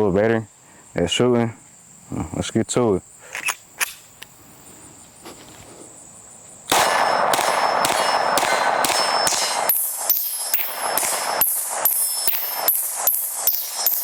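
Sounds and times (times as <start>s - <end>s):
insects trilling: 0.0s - 14.0s
pistol shots: 6.7s - 14.0s.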